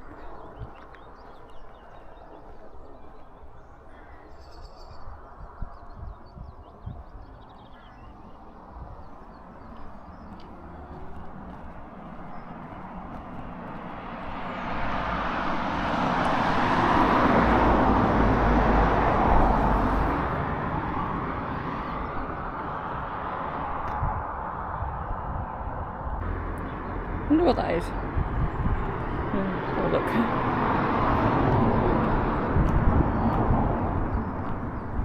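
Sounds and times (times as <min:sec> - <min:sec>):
car passing on road: 0:08.2 - 0:35.0.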